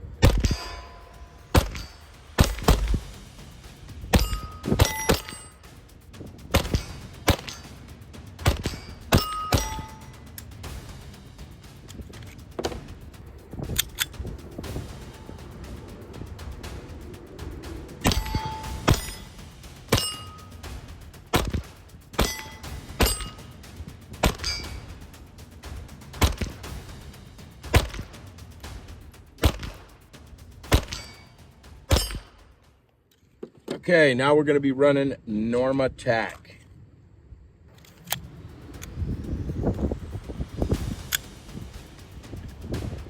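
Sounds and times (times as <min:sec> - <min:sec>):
pistol shots: 0:00.2 - 0:00.9
steel target ping: 0:00.2 - 0:03.0, 0:04.1 - 0:05.7, 0:06.5 - 0:07.8, 0:08.4 - 0:10.2, 0:18.0 - 0:19.3, 0:19.9 - 0:20.6, 0:22.2 - 0:23.5, 0:24.2 - 0:24.9, 0:30.7 - 0:32.4.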